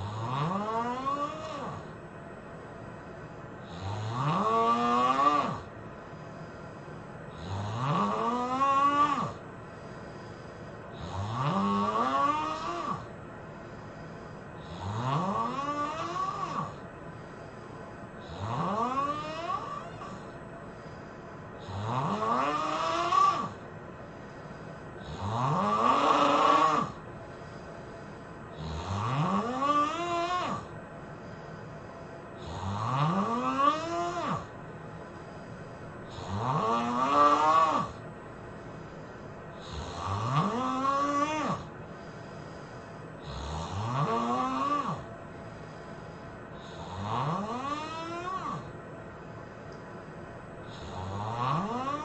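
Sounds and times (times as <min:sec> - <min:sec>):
person snoring loudly: 0:00.0 - 0:01.9, 0:03.6 - 0:05.7, 0:07.3 - 0:09.4, 0:11.0 - 0:13.1, 0:14.6 - 0:16.8, 0:18.2 - 0:20.3, 0:21.6 - 0:23.6, 0:25.0 - 0:27.0, 0:28.5 - 0:30.7, 0:32.4 - 0:34.5, 0:36.1 - 0:38.0, 0:39.6 - 0:41.7, 0:43.2 - 0:45.0, 0:46.6 - 0:48.7, 0:50.6 - 0:52.0.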